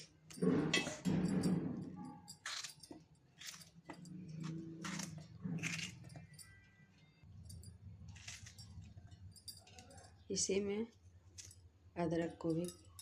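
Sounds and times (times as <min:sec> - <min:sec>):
kitchen utensils clinking: 0:00.3 - 0:04.5.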